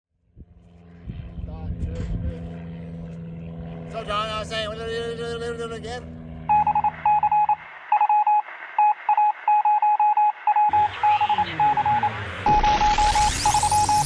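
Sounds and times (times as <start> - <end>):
low engine hum: 0.2 - 14.0
electronic beep pulses: 6.5 - 14.0.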